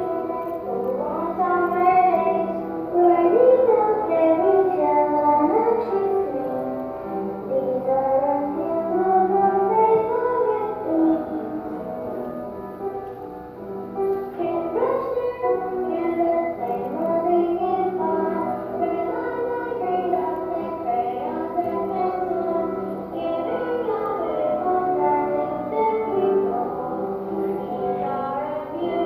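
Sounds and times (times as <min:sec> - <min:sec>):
instrumental accompaniment: 0:00.0 - 0:29.0
children singing: 0:14.4 - 0:29.0.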